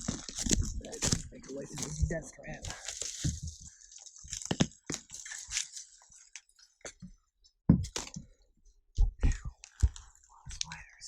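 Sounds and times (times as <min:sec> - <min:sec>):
debris crunching underfoot: 0:00.0 - 0:06.5.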